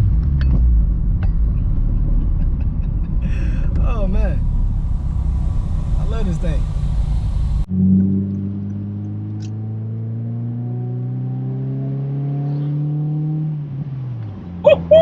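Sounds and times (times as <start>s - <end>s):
exhaust pops: 0.0s - 8.1s
car engine accelerating: 0.0s - 15.0s.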